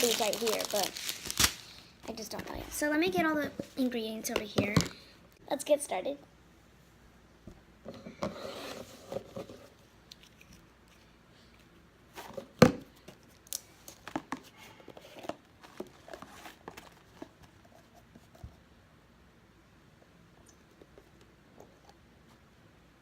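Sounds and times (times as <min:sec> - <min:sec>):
crinkling rustle: 0:00.0 - 0:02.8.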